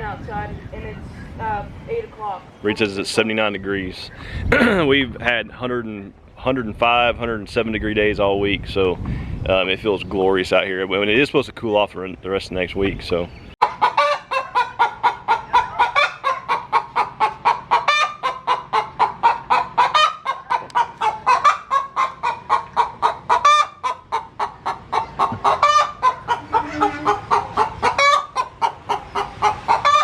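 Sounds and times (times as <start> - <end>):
chickens clucking: 12.8 - 30.0.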